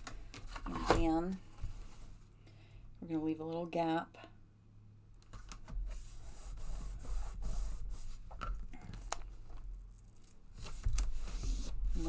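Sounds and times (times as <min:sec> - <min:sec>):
paper rubbing on a table: 0:05.8 - 0:08.4, 0:10.6 - 0:12.0.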